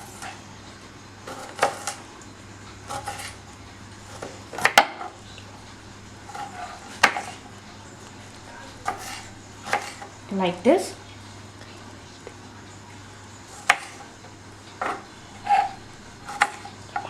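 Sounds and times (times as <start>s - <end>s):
knife striking cutting board: 8.8s - 10.0s, 13.6s - 14.0s.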